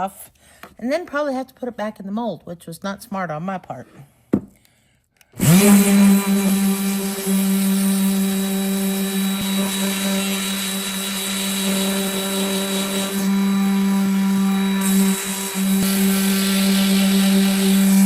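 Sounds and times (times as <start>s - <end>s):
electric sander running: 5.4s - 18.0s
sandpaper hissing on wood: 9.5s - 18.0s.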